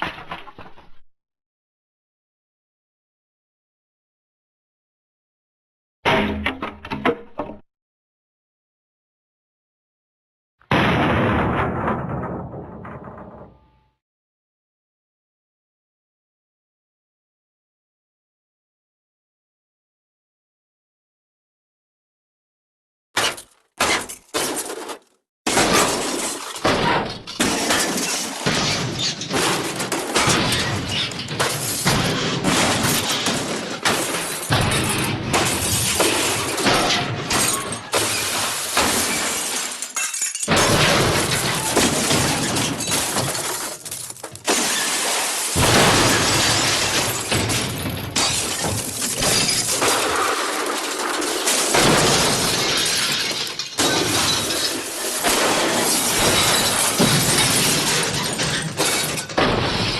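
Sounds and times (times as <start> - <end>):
glass and debris crashing: 23.9 - 59.9.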